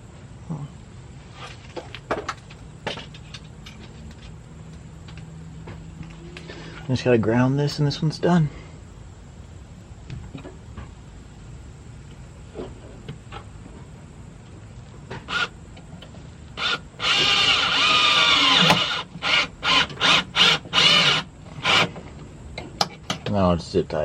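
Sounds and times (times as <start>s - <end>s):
cordless drill driving a screw: 15.2s - 15.5s, 16.6s - 21.9s.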